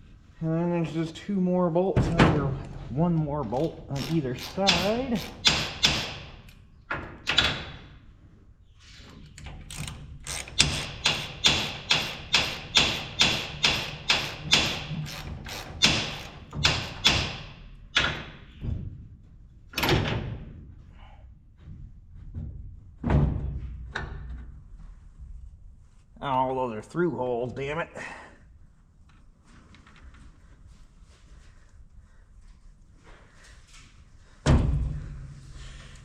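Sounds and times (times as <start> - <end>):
ratchet wrench clicking: 4.0 - 6.1, 9.7 - 17.0.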